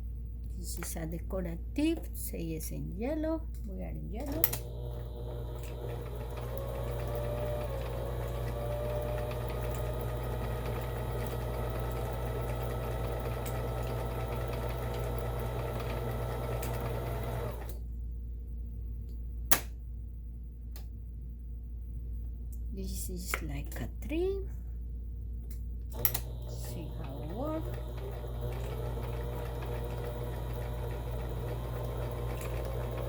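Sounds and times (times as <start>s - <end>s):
sewing machine running: 4.5s - 17.8s, 26.0s - 33.0s.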